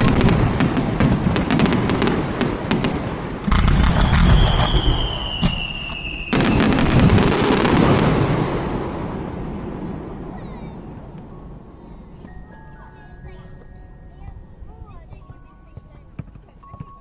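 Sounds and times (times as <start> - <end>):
firework booms: 0.0 - 11.2
fireworks crackling: 0.0 - 12.3
high falling whistle: 3.9 - 6.7.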